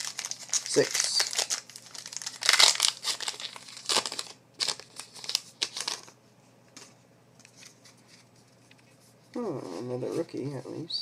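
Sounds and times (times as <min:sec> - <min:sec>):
wrapper tearing and crinkling: 0:00.0 - 0:06.2.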